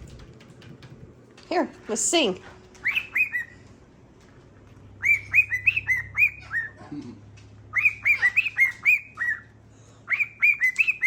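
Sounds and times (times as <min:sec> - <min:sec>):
pet bird whistling: 0:02.8 - 0:03.6, 0:05.0 - 0:06.8, 0:07.7 - 0:11.0.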